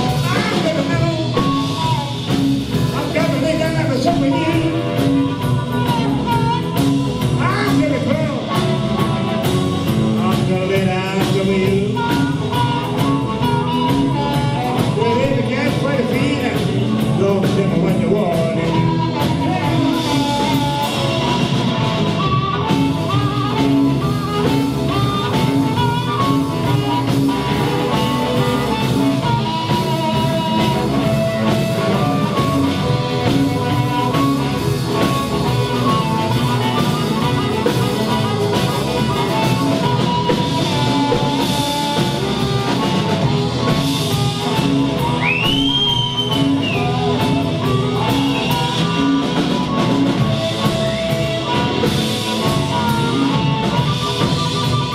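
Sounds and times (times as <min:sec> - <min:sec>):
bass guitar: 0:00.0 - 0:54.9
drum kit: 0:00.0 - 0:54.9
electric guitar: 0:00.0 - 0:54.9.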